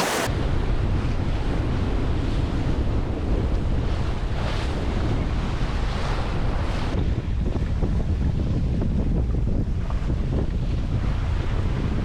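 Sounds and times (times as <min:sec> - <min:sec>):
ocean waves rushing: 0:00.0 - 0:00.3
wind buffeting microphone: 0:00.0 - 0:12.0.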